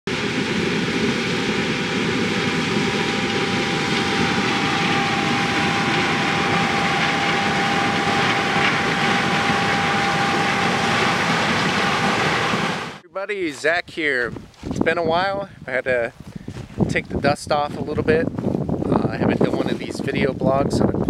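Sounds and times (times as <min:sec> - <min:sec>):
large engine running: 0:00.1 - 0:13.0
faint steady whine: 0:00.1 - 0:13.1.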